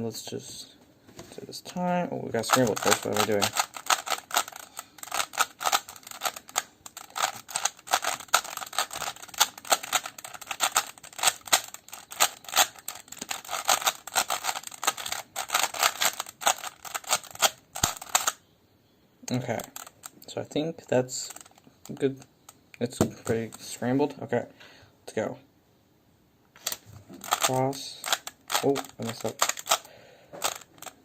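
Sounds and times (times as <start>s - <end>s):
puzzle cube plastic clicks: 2.4s - 18.4s, 19.3s - 20.3s, 21.2s - 23.8s, 26.6s - 31.0s.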